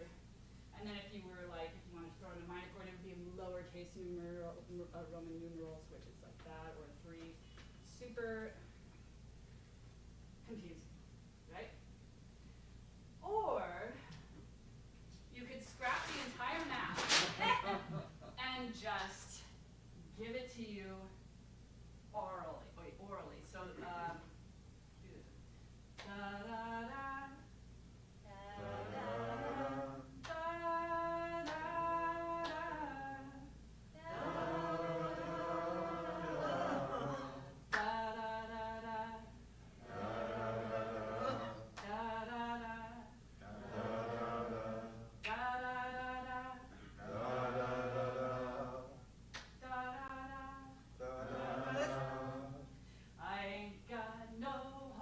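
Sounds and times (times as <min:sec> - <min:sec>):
woman singing phrases: 0:26.0 - 0:27.5, 0:28.2 - 0:35.2, 0:36.4 - 0:39.4, 0:41.2 - 0:43.2, 0:45.2 - 0:46.7, 0:49.6 - 0:50.8, 0:51.6 - 0:52.2, 0:53.2 - 0:55.0
group of voices singing: 0:28.4 - 0:33.4, 0:34.0 - 0:49.0, 0:49.7 - 0:52.8.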